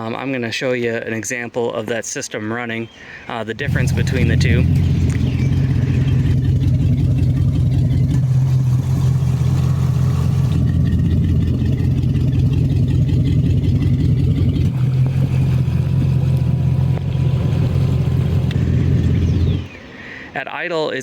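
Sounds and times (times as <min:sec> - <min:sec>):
boat engine idling: 0:03.6 - 0:19.8.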